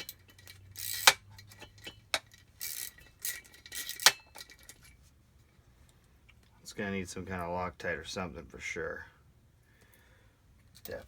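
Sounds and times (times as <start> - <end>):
metal parts knocking: 0.0 - 4.8.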